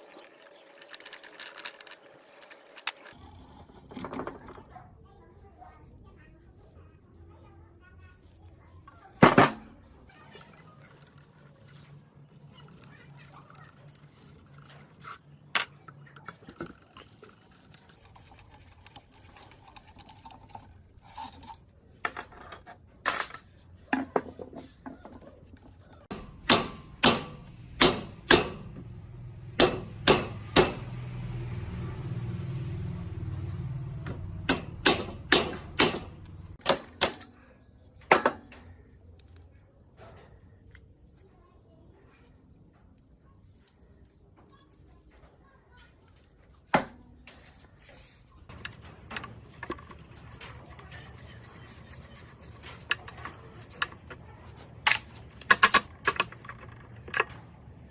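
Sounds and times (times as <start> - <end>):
metal tools clicking and knocking: 34.5 - 38.7, 52.6 - 57.6.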